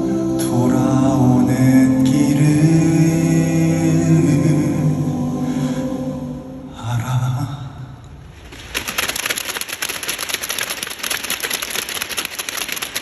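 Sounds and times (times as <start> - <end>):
audience applause: 8.7 - 13.0.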